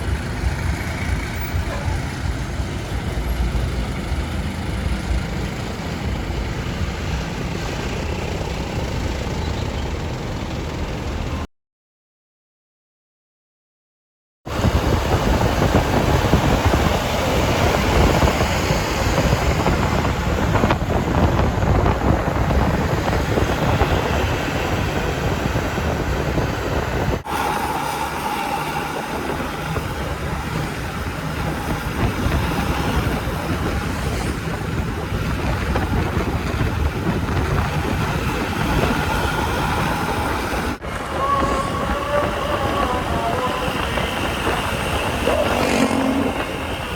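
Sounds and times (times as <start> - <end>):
road vehicle rumble: 0.0 - 11.5, 14.5 - 46.9
wind buffeting microphone: 14.5 - 46.9.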